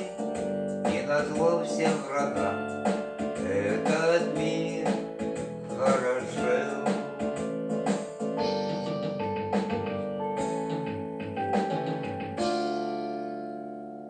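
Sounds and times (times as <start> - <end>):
man singing: 0.0 - 7.4
guitar and keyboard: 0.0 - 14.0.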